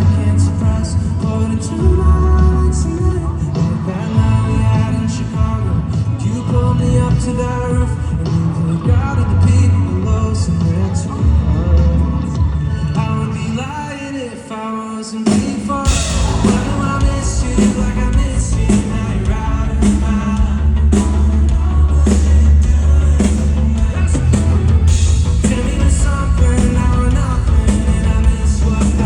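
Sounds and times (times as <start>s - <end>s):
drums and bass beat: 0.0s - 13.4s, 15.3s - 29.0s
singing: 0.0s - 29.0s
live band playing: 15.3s - 29.0s.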